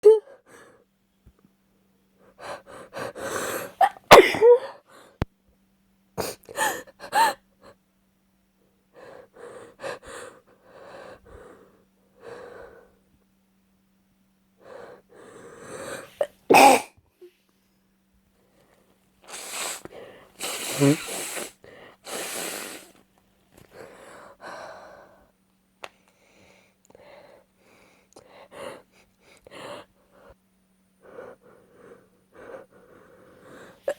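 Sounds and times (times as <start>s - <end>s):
woman sneezing: 3.8s - 4.7s, 16.2s - 16.9s, 20.4s - 21.5s
gasping breaths: 19.3s - 23.0s, 31.0s - 33.9s.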